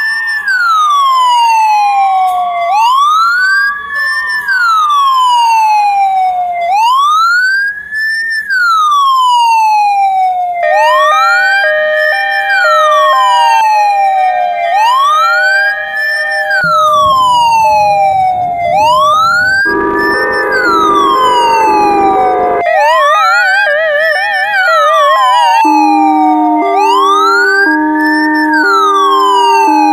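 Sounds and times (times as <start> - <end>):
ambulance siren wailing: 0.0 - 29.9
stepping steady tones: 10.0 - 29.9
low rumble: 16.4 - 22.8.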